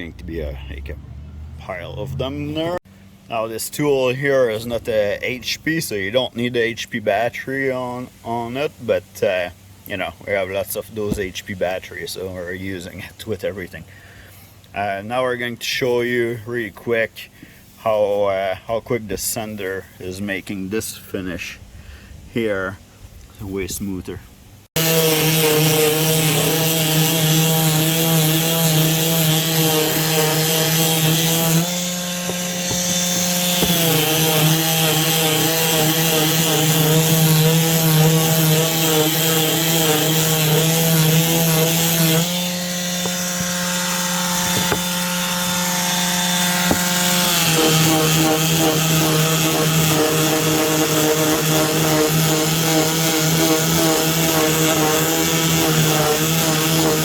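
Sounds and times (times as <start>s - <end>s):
palm sander humming: 0.0s - 21.4s, 23.4s - 57.0s
sandpaper rubbing on wood: 24.8s - 57.0s.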